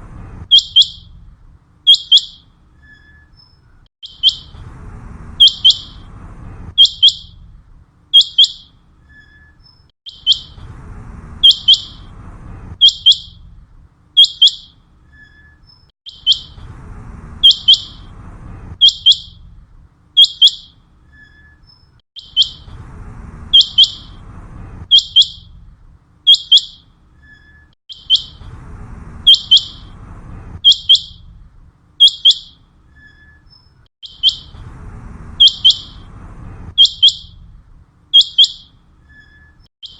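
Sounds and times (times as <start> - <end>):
faint low background rumble: 0.0 - 39.7
quail whistled calls: 0.5 - 1.1, 1.9 - 4.6, 5.4 - 6.1, 6.8 - 7.4, 8.2 - 10.6, 11.4 - 12.1, 12.8 - 13.4, 14.2 - 16.6, 17.4 - 18.1, 18.8 - 19.4, 20.2 - 22.7, 23.5 - 24.2, 24.8 - 25.6, 26.3 - 28.4, 29.2 - 30.0, 30.6 - 31.3, 32.0 - 34.6, 35.4 - 36.1, 36.7 - 37.4, 38.1 - 39.9.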